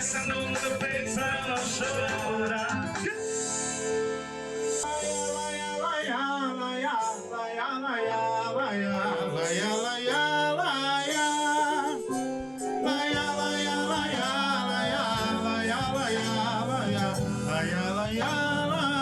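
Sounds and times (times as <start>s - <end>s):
person singing: 0.0s - 3.8s, 4.7s - 19.0s
percussion: 0.0s - 5.6s, 9.4s - 19.0s
accordion melody: 0.0s - 19.0s
bass: 0.0s - 19.0s.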